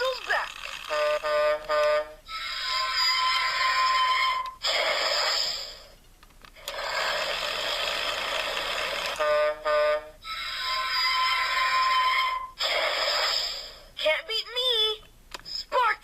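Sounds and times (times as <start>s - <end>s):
toy engine hissing: 0.0s - 1.6s, 2.3s - 6.0s, 6.6s - 9.6s, 10.4s - 14.0s.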